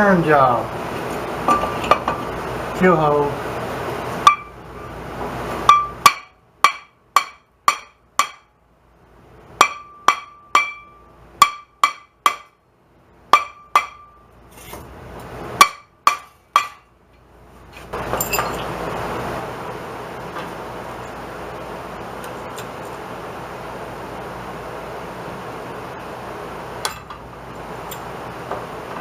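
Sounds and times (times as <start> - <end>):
hammer striking steel: 4.2 - 4.6, 5.7 - 8.5, 9.6 - 12.6, 13.3 - 14.3, 15.6 - 16.9.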